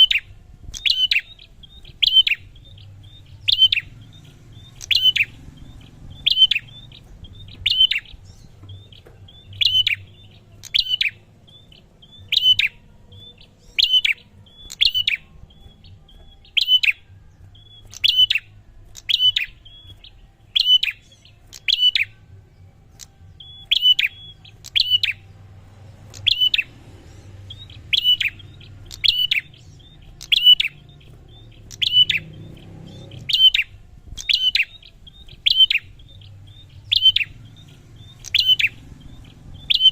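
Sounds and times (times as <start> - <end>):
bird calling clicky notes: 0.0 - 4.0, 4.7 - 22.2, 22.8 - 25.3, 26.0 - 26.7, 27.5 - 39.9.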